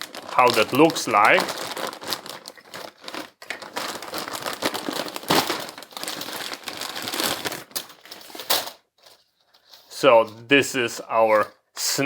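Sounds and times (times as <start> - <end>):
packaging crinkling and tearing: 0.0 - 8.8.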